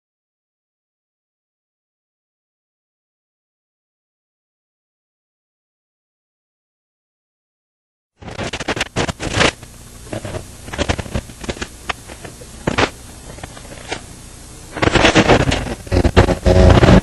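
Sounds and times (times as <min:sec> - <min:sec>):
clicks knocks and scrapes: 0:08.2 - 0:14.1, 0:14.7 - 0:17.0.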